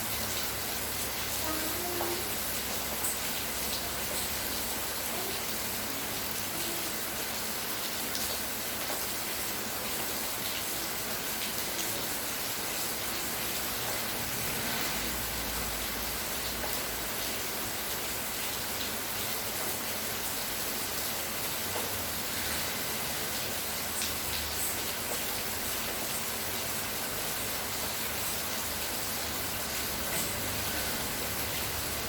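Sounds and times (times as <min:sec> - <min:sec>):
steady rain falling: 0:00.0 - 0:32.0.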